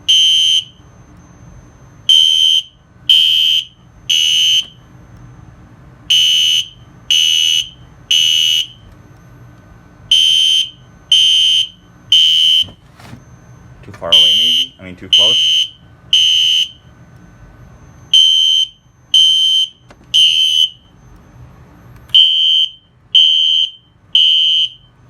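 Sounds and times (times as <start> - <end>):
fire alarm horn beeping: 0.0 - 4.9, 6.1 - 8.9, 10.0 - 17.0, 17.6 - 21.2, 22.1 - 25.0.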